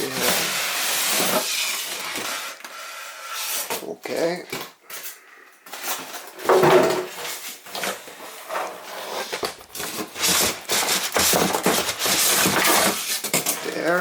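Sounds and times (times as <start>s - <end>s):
packaging rustling: 7.1s - 14.0s.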